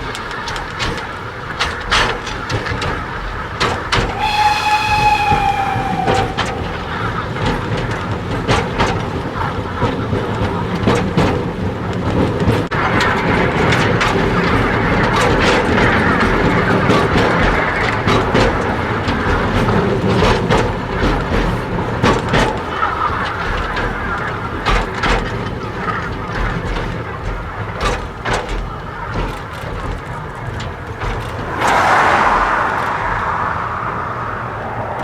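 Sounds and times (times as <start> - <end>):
train wheels clicking on rail joints: 0.0 - 11.3
steam train rumble and hiss: 3.7 - 8.3.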